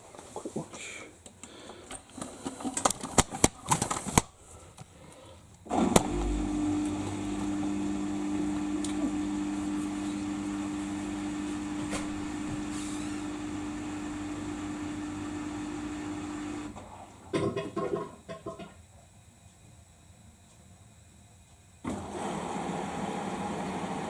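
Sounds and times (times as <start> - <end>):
washing machine humming: 5.6 - 18.8, 21.8 - 24.0
washing machine thump: 11.8 - 12.7.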